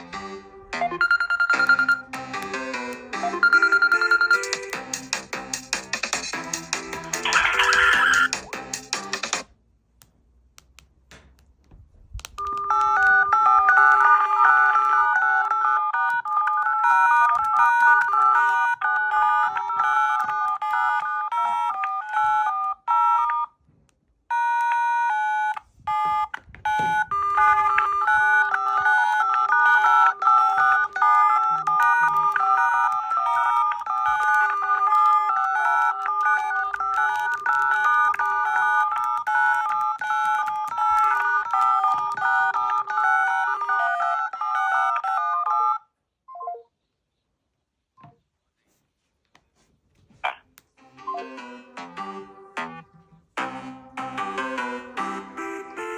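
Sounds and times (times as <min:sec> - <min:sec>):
phone ringtone melody: 0:00.7 - 0:05.2, 0:06.1 - 0:08.6, 0:12.4 - 0:23.5, 0:24.3 - 0:46.6, 0:54.0 - 0:55.9.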